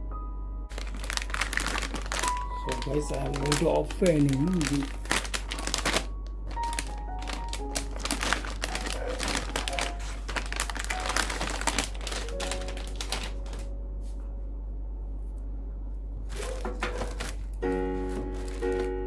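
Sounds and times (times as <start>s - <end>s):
background music: 0.0s - 14.0s
computer parts being handled: 0.7s - 13.7s, 16.3s - 19.0s.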